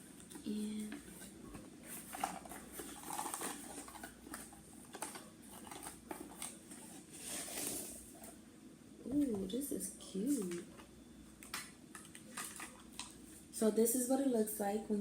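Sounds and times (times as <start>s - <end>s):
packaging rustling and crinkling: 0.0s - 8.4s, 11.5s - 13.5s.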